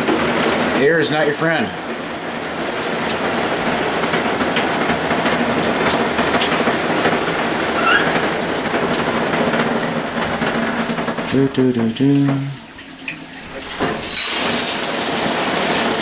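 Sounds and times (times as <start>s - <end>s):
faucet sputtering with air: 2.6s - 9.3s, 13.2s - 16.0s.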